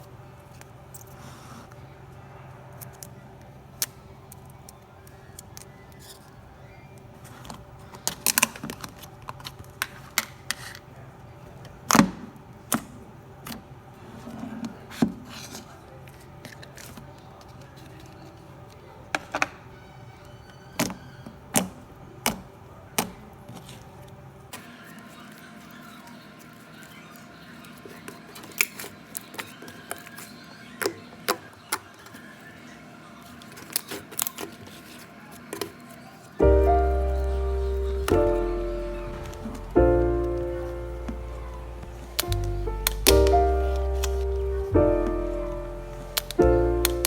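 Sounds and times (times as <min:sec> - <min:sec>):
faint steady background tone: 0:35.1 - 0:47.0.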